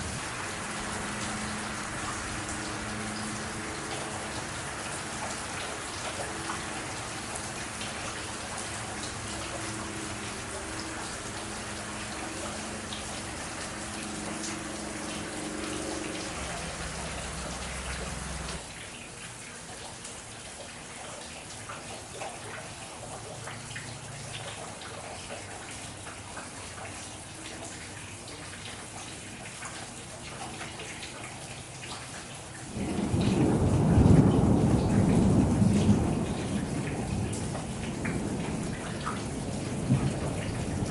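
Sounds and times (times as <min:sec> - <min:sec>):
rain falling: 0:00.0 - 0:40.9
low steady hum: 0:05.2 - 0:18.6.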